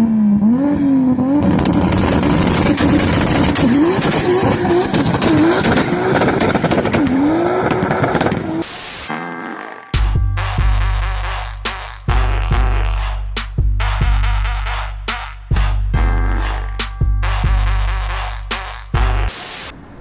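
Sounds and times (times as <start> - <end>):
small gas engine revving: 0.0 - 9.8.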